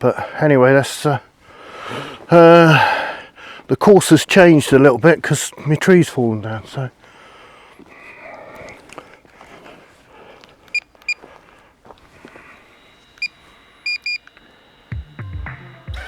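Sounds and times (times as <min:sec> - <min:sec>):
faint background noise: 0:00.0 - 0:16.0
short electronic beeps: 0:13.0 - 0:16.0.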